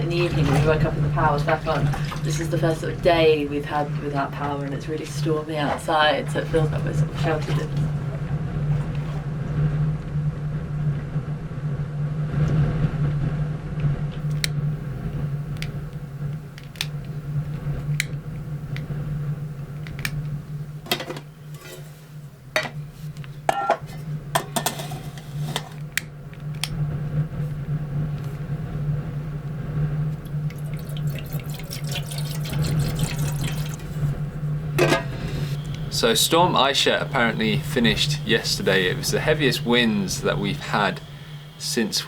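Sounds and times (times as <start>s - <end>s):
water running and pouring: 0.0s - 9.6s, 30.2s - 41.0s
steady low hum: 0.0s - 42.0s.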